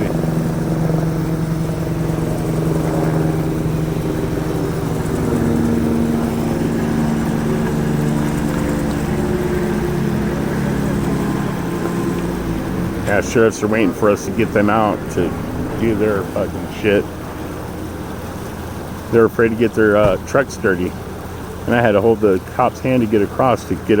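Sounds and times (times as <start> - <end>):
vehicle engine running: 0.0 - 24.0.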